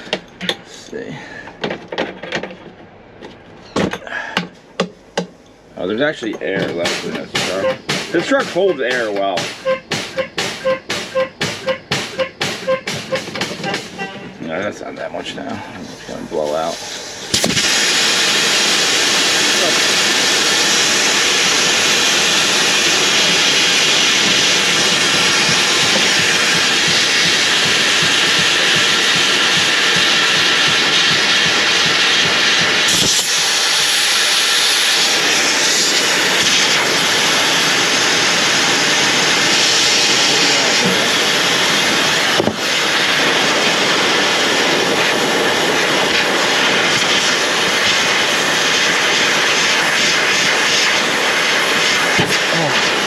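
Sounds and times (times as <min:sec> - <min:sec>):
compressed air hissing: 0:15.5 - 0:53.0.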